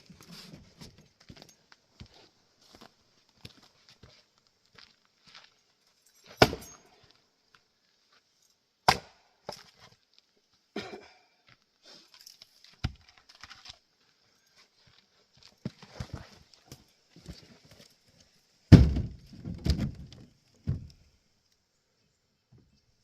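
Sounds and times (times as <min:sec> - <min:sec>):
axe chopping wood: 0:06.4 - 0:06.8, 0:08.8 - 0:09.6, 0:18.7 - 0:19.1.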